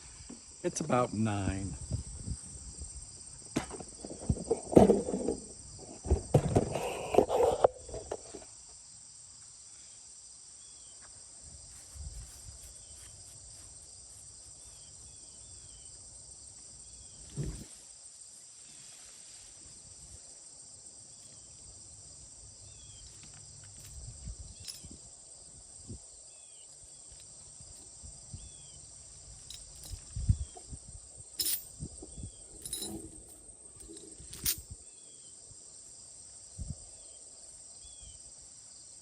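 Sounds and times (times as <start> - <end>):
insect chorus: 0.0 - 39.0
handling knocks and rustling: 3.5 - 6.8, 31.4 - 31.7, 32.6 - 34.8
thump: 17.3 - 17.7.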